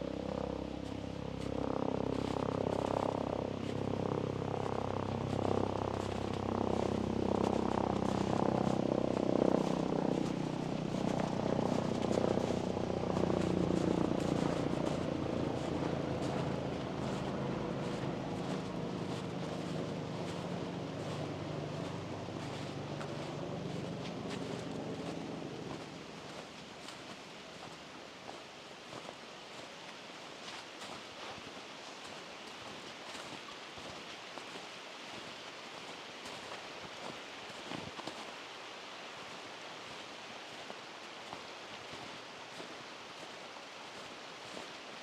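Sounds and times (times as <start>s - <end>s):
vehicle engine passing by: 0.0s - 27.0s.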